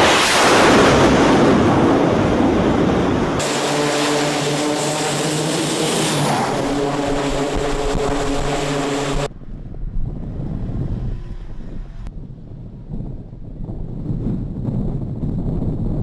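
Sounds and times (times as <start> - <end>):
low wind rumble: 0.0 - 16.0
turboprop engines droning: 0.8 - 15.3.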